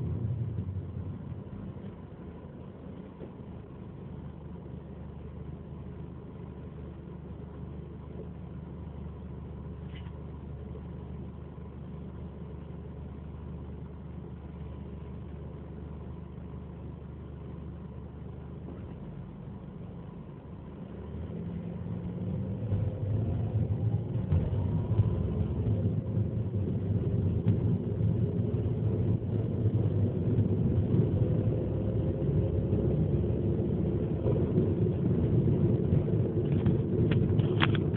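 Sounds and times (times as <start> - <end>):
car engine accelerating: 20.8 - 37.9
rising whine: 21.0 - 37.9.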